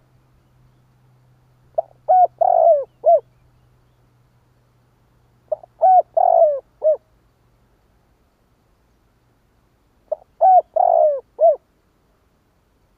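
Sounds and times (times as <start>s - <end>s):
dove cooing: 1.8s - 3.3s, 5.5s - 7.0s, 10.1s - 11.6s.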